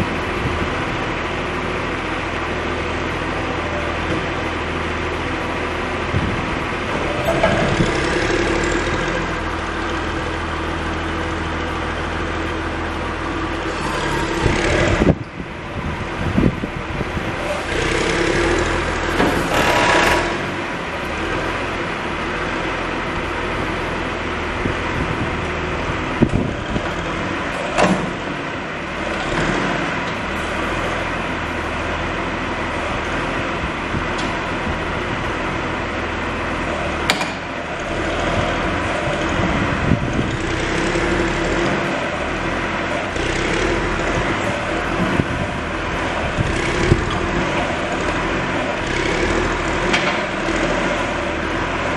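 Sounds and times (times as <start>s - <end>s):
diesel engine running: 0.0s - 51.9s
machine knocks and clanks: 6.1s - 9.1s, 26.2s - 28.3s, 37.0s - 37.5s.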